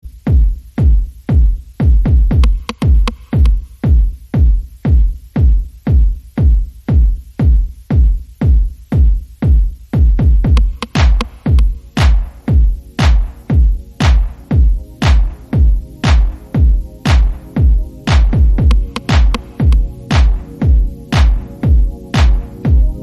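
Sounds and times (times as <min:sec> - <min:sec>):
heavy bass kick drum: 0:00.0 - 0:23.0
electronic music: 0:00.1 - 0:23.0.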